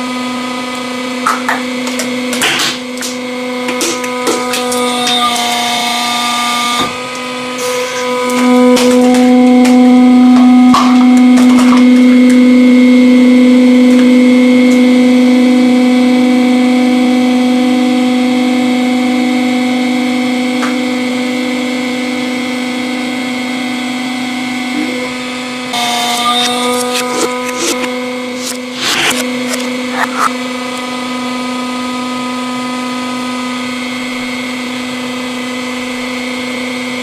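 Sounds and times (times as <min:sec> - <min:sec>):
hydraulic pump motor humming: 0:00.0 - 0:15.6, 0:23.6 - 0:34.6.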